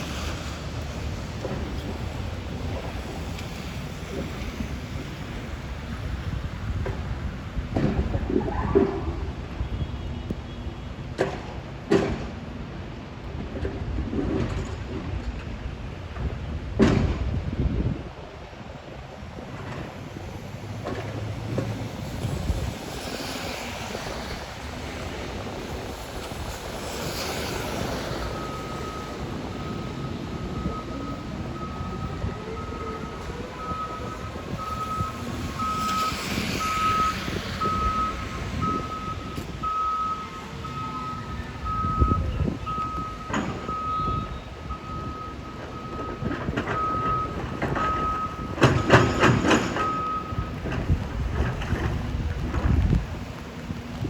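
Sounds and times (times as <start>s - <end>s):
excavator engine rumbling: 23.8s - 54.0s.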